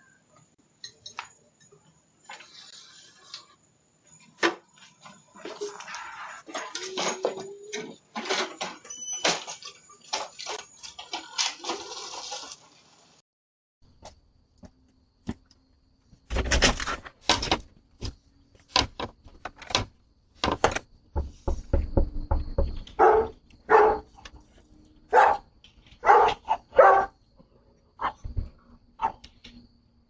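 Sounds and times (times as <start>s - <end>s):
dog barking: 23.0s - 24.1s, 25.1s - 27.2s.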